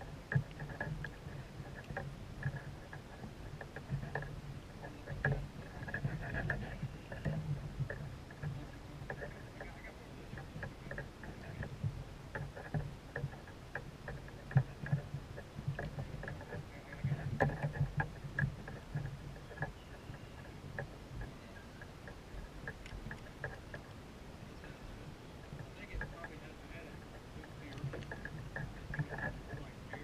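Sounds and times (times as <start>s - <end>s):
knocks and clicks against kayak hull: 0.0s - 24.0s, 24.6s - 30.0s.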